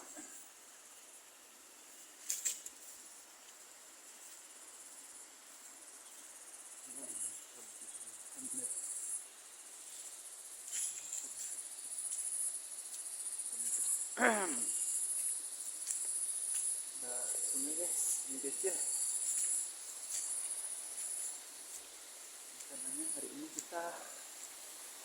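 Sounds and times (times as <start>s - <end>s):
insects chirring: 0.0s - 25.0s.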